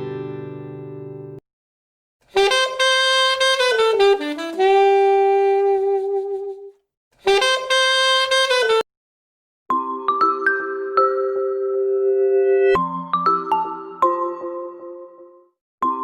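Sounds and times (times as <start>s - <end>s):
jazzy saxophone ringtone: 2.4s - 6.7s, 7.3s - 8.8s.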